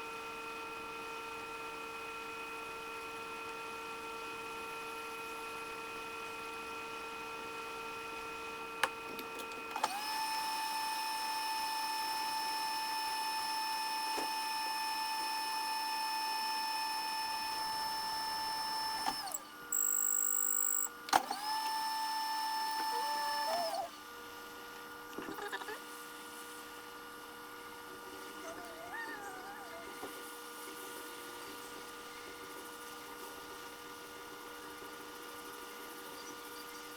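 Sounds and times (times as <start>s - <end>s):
small motor electric whine: 0.0s - 36.9s
high steady tone: 19.7s - 20.9s.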